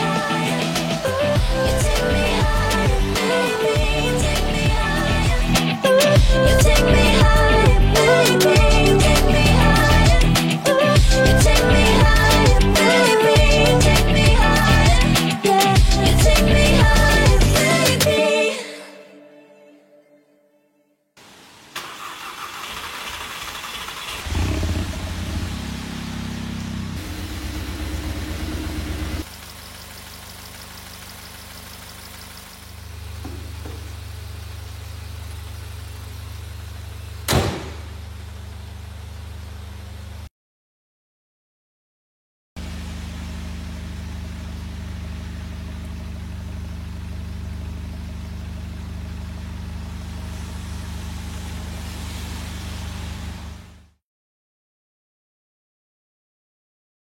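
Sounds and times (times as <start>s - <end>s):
engine idling: 0.0s - 17.7s, 21.8s - 40.3s, 42.6s - 53.9s
low mechanical drone: 24.3s - 40.3s.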